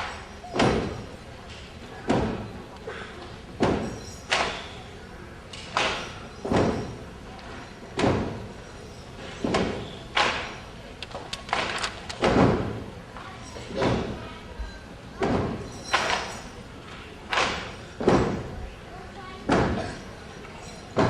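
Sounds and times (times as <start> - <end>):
bamboo poles clapping together: 17.3 - 17.7.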